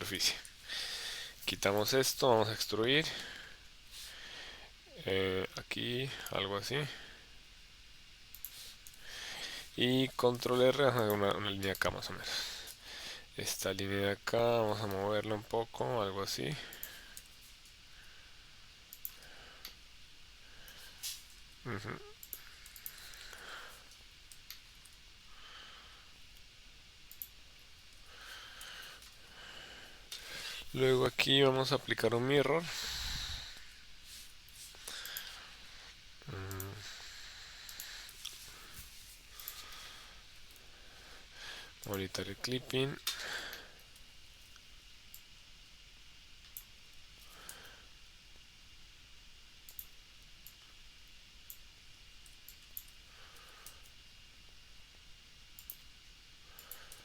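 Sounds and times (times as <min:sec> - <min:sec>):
breathing into microphone: 0:32.7 - 0:36.0.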